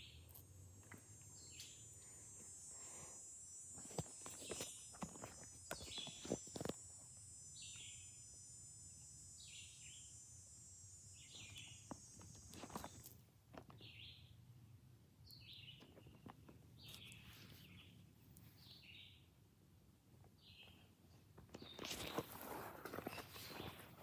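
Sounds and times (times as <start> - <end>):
faint bird chirps: 0.0 - 13.0, 15.2 - 19.4
high-pitched insect buzz: 0.0 - 14.0, 21.7 - 24.0.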